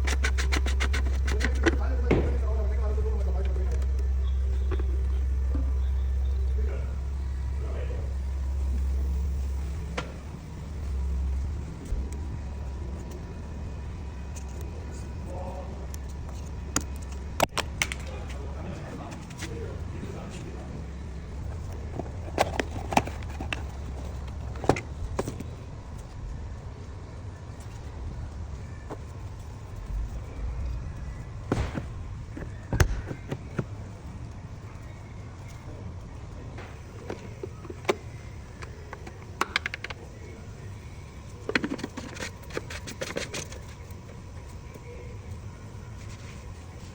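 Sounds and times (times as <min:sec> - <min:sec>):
steady low hum: 0:00.0 - 0:46.9
tools clicking and knocking: 0:36.6 - 0:40.1.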